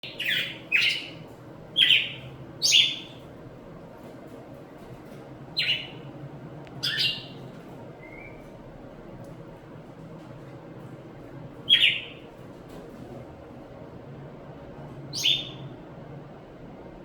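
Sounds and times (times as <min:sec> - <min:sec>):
bird calling: 0:00.0 - 0:03.2, 0:05.6 - 0:06.1, 0:06.8 - 0:07.4, 0:08.0 - 0:08.4, 0:11.7 - 0:12.3, 0:15.1 - 0:15.7
low background hum: 0:00.0 - 0:17.0.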